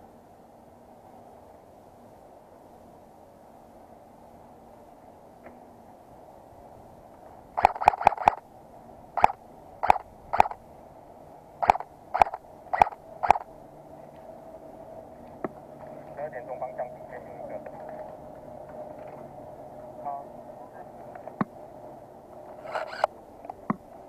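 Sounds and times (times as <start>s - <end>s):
airsoft gun shots: 7.6s - 8.4s, 11.6s - 13.4s.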